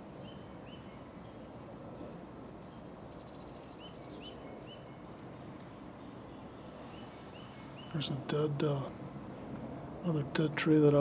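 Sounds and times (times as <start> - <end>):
low background hum: 0.0 - 11.0
short rising bird chirps: 3.1 - 5.0
songbird high trill: 3.1 - 5.0.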